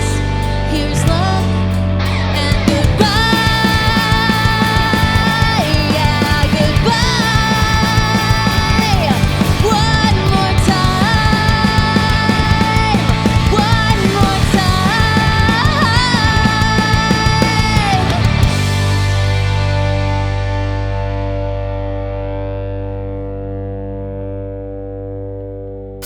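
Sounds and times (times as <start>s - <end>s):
drums: 0.0s - 22.0s
electric guitars: 0.0s - 25.9s.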